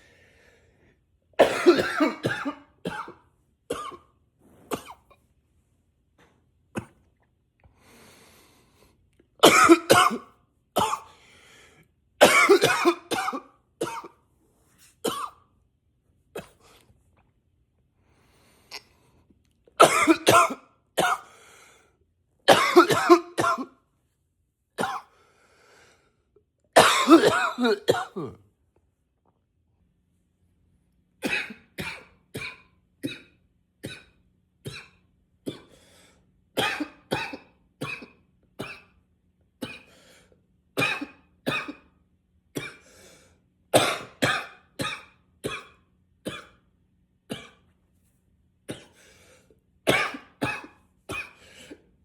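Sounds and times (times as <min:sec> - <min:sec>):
man coughing: 0:01.4 - 0:04.0, 0:09.4 - 0:11.1, 0:12.2 - 0:14.1, 0:19.8 - 0:21.3, 0:22.5 - 0:23.7, 0:24.8 - 0:25.1, 0:26.8 - 0:28.4, 0:31.2 - 0:34.1, 0:36.6 - 0:38.8, 0:40.8 - 0:41.9, 0:43.8 - 0:46.6, 0:49.9 - 0:51.8
faint breaths: 0:07.6 - 0:09.0.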